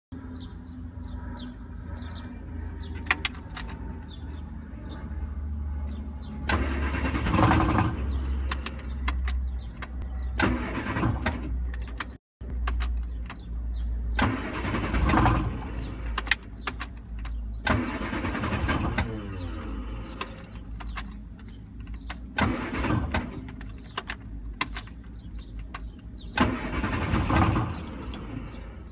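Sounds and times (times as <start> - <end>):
car engine cranking on starter: 6.5 - 8.8, 10.4 - 11.5, 14.1 - 16.3, 17.6 - 21.0, 22.0 - 24.0, 26.2 - 28.6.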